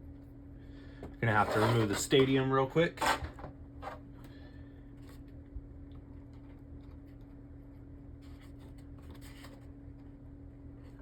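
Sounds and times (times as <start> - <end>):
steady electrical hum: 0.0 - 11.0.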